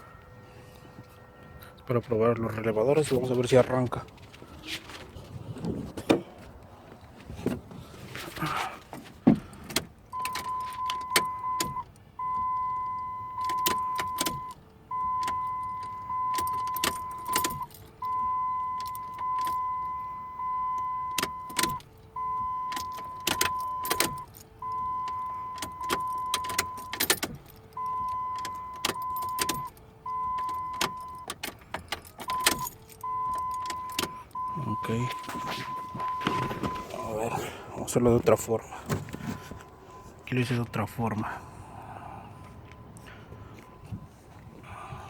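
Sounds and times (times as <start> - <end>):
electronic beep tone: 32.3 - 37.1.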